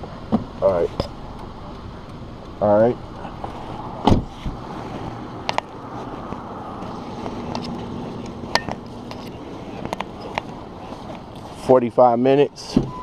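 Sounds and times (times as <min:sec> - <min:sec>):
vehicle rumble: 0:00.0 - 0:13.0
loud thump: 0:04.0 - 0:04.6.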